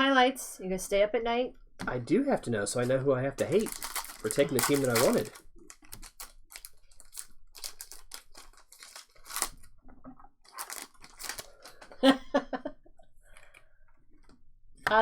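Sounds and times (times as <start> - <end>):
cards being shuffled: 2.8 - 9.7, 10.5 - 12.0
foil wrappers crinkling and tearing: 2.8 - 9.7, 10.4 - 12.0.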